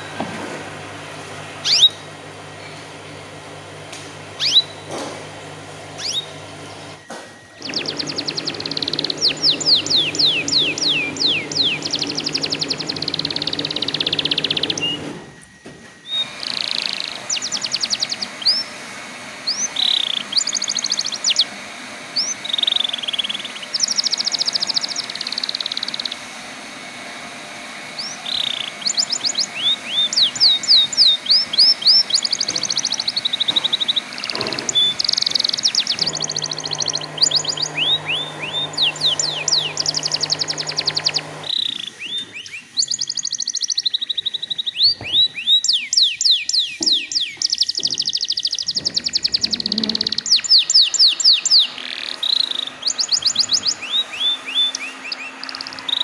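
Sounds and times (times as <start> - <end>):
canary singing trills: 1.6 - 3.1, 4.3 - 4.9, 5.8 - 7.0, 7.6 - 15.1, 16.0 - 18.8, 19.4 - 26.3, 27.7 - 56.0.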